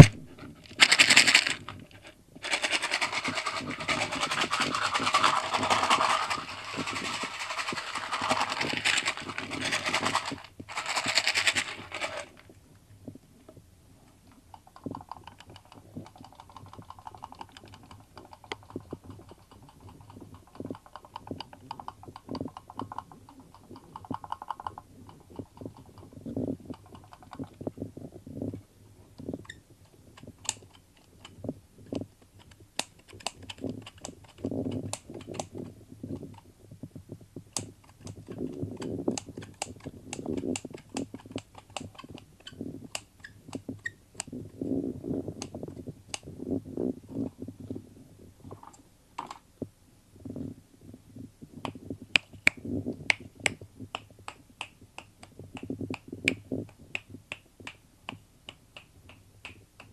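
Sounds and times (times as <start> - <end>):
sharp clicks and snaps: 14.2 - 27.7, 29.2 - 36.5, 37.5 - 44.4, 51.6 - 59.9
low muffled rumbling: 43.7 - 48.7.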